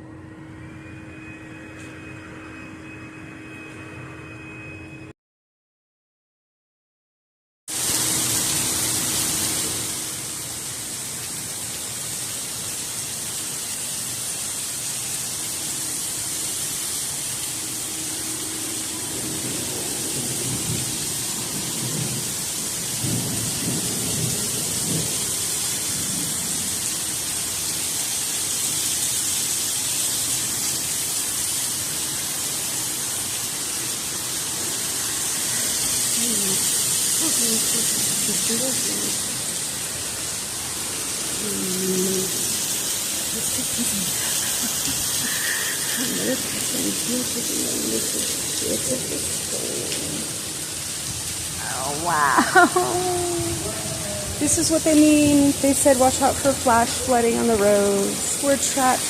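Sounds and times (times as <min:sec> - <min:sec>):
heavy rain pouring: 0:07.7 - 0:59.0
low thunder rumbling: 0:18.1 - 0:26.8, 0:46.0 - 0:59.0.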